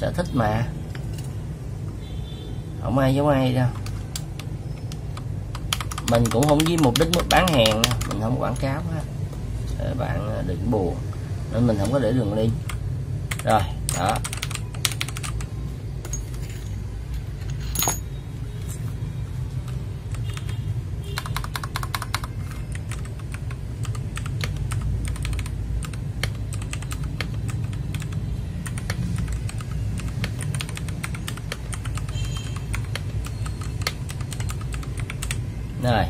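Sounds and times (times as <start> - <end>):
mechanical keyboard typing: 3.7 - 8.6, 11.7 - 15.5, 19.6 - 35.5.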